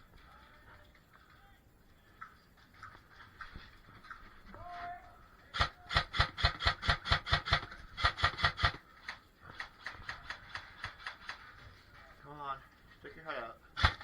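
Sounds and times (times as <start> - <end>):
airsoft rifle firing single shots: 5.5 - 8.8, 13.8 - 14.0.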